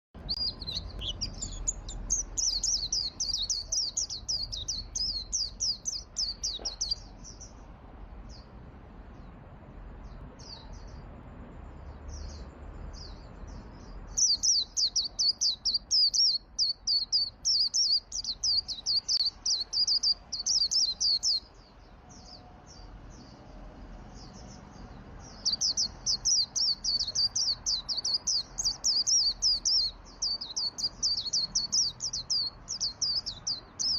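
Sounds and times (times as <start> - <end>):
bird twittering song: 0.2 - 33.9.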